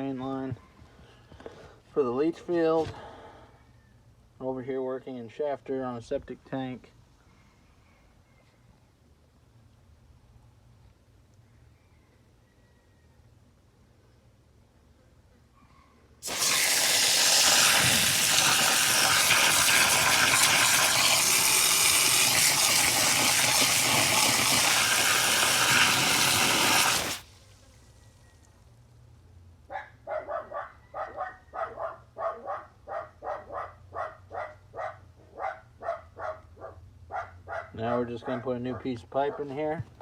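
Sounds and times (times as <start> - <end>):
water gushing: 16.2 - 27.9
dog barking: 29.7 - 39.5.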